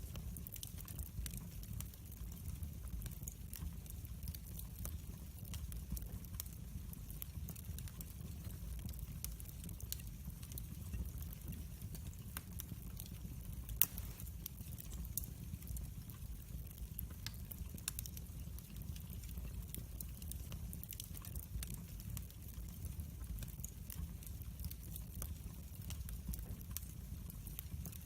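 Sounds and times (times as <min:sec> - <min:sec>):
fire crackling: 0:00.0 - 0:28.0
low rumble of log fire: 0:00.0 - 0:28.0.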